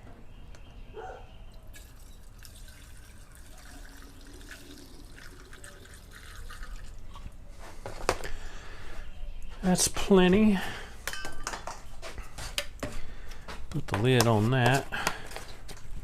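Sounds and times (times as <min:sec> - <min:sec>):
gasoline pouring into tank: 0:01.7 - 0:07.2.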